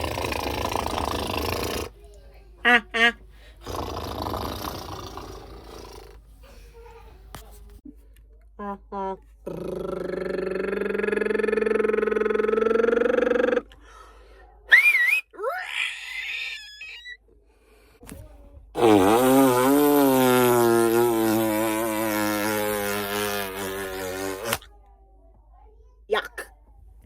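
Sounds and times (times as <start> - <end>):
person making voiced tones: 8.7 - 13.7.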